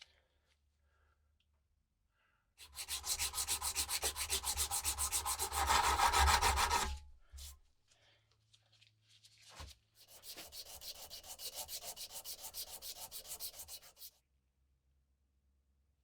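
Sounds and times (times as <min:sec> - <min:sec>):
hand sanding strokes: 0:02.6 - 0:07.5, 0:10.0 - 0:14.1.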